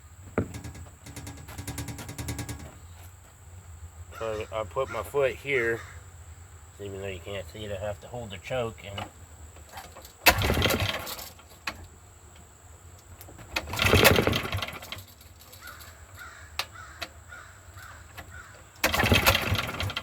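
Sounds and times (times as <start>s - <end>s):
generator recoil cord pulls: 0.3s - 2.8s, 8.8s - 17.2s, 17.8s - 20.0s
generator engine turning over: 0.4s - 2.8s, 8.8s - 17.2s, 18.0s - 20.0s.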